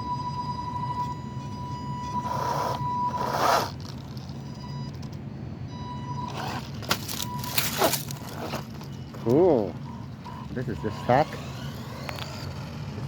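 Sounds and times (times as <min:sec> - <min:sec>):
electric motor whining: 0:00.8 - 0:03.9, 0:09.2 - 0:13.0
tires scraping rough ground: 0:00.8 - 0:05.2, 0:06.1 - 0:13.0.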